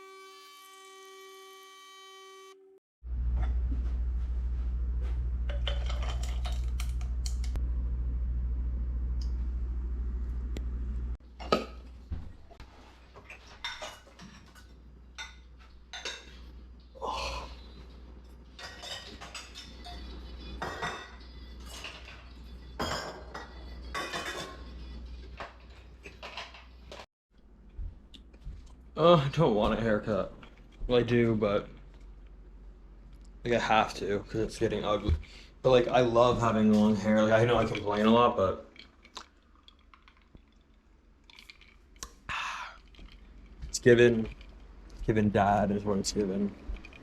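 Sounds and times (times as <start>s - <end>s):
steady low hum: 3.0s - 12.6s
dishes and cutlery clattering: 5.5s - 6.8s, 13.2s - 16.5s, 18.5s - 24.7s, 25.4s - 27.0s.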